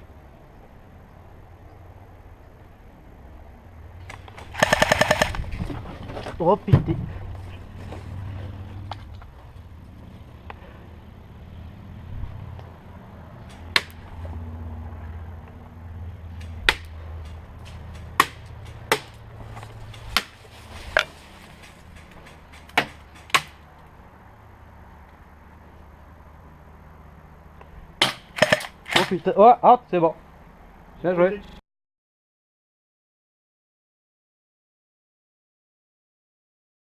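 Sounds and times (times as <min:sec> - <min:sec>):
airsoft gun shots: 0:04.5 - 0:05.4, 0:28.0 - 0:29.2.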